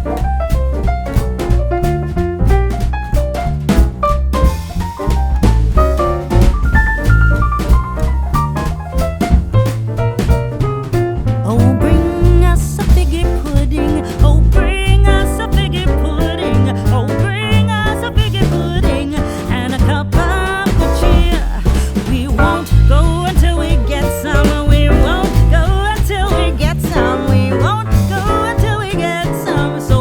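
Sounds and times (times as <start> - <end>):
moving bass line: 0.0 - 30.0
background music with beat: 2.5 - 11.0.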